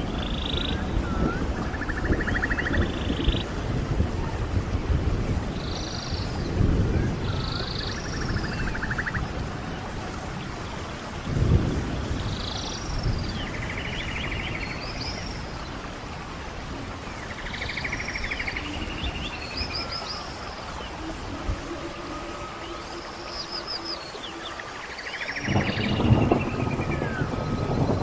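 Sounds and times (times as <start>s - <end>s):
birds calling: 0.0s - 3.5s, 16.9s - 28.0s
steady rain: 0.0s - 28.0s.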